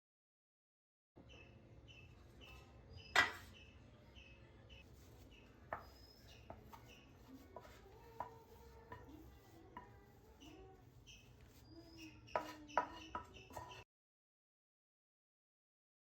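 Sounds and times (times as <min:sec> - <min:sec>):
bird chirping: 0:01.2 - 0:07.2, 0:10.3 - 0:13.8
kitchen utensils clinking: 0:02.6 - 0:03.6.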